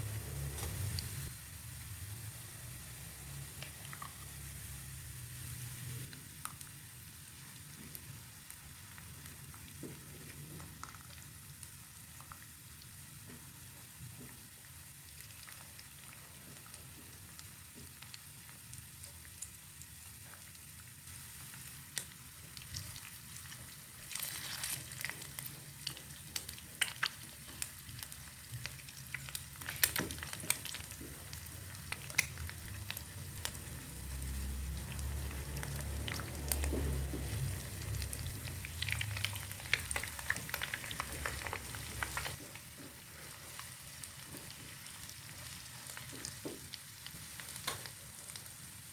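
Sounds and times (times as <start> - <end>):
food sizzling in hot oil: 21.0 - 42.4.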